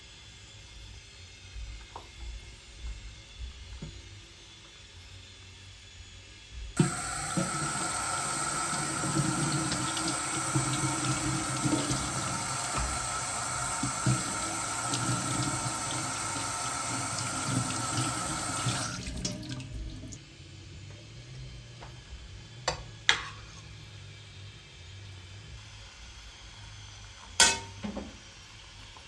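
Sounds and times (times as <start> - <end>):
water running from a tap: 6.8 - 20.2.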